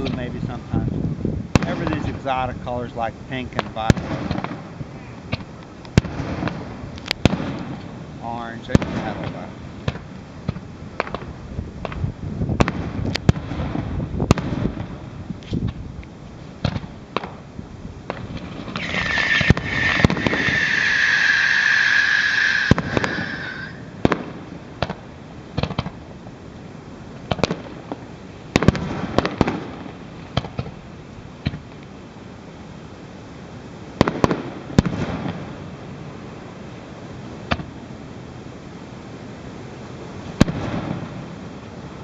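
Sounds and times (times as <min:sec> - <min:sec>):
fireworks bangs and pops: 0:01.5 - 0:02.2, 0:03.6 - 0:04.7, 0:05.3 - 0:08.0, 0:08.7 - 0:15.8, 0:16.6 - 0:17.4, 0:18.1 - 0:20.7, 0:24.0 - 0:25.0, 0:25.6 - 0:26.0, 0:27.3 - 0:30.8, 0:34.0 - 0:35.5, 0:40.4 - 0:41.2
firework hissing whistle: 0:18.7 - 0:24.0.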